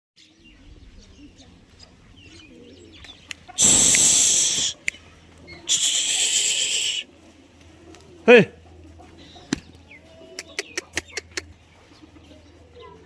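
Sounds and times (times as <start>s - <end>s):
faint bird cooing: 0.2s - 13.0s
loud hissing burst: 3.6s - 4.8s, 5.7s - 7.0s.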